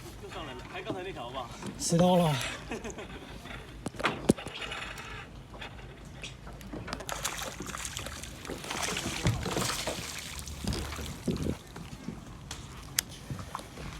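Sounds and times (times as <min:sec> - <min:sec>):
water sloshing and splashing: 0:05.4 - 0:13.9.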